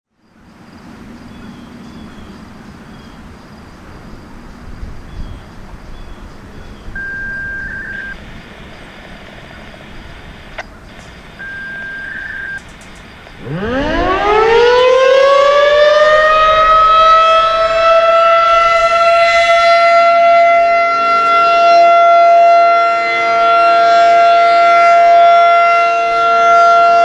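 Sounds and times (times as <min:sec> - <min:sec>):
outdoor background noise: 0:00.1 - 0:27.0
radio hiss: 0:06.8 - 0:14.4
radio click: 0:07.0 - 0:14.0
steady radio beep: 0:07.0 - 0:14.6.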